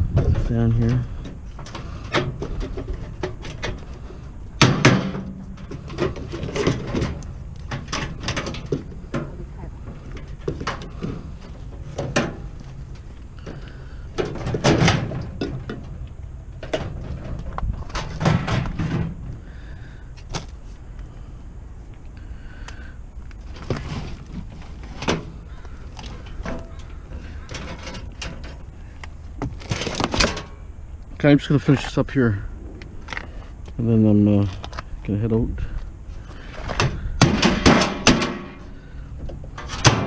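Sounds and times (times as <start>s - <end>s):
metal scrap clanking and rattling: 0.2s - 16.0s, 16.6s - 19.3s, 26.0s - 28.7s, 29.4s - 30.6s, 36.5s - 38.8s, 39.5s - 40.0s.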